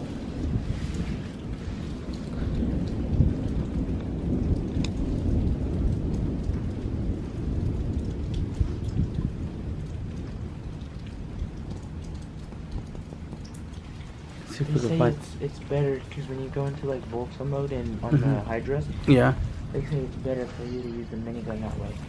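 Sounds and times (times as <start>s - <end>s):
rain falling: 0.0s - 22.0s
thunder rumbling: 0.0s - 22.0s
drops ticking close by: 2.0s - 19.0s.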